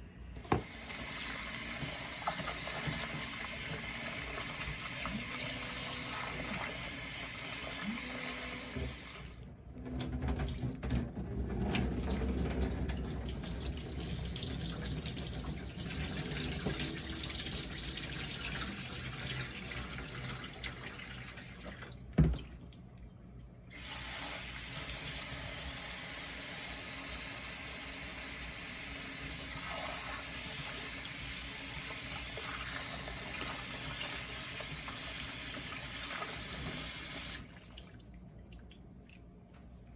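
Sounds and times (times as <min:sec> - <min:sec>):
tap running into sink: 0:00.4 - 0:05.2, 0:16.1 - 0:17.6.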